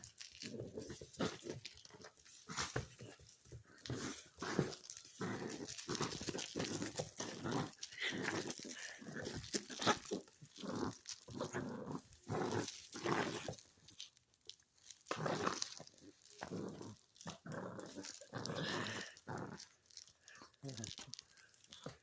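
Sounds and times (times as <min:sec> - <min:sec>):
puppy growling: 0:00.2 - 0:14.0, 0:15.0 - 0:22.0.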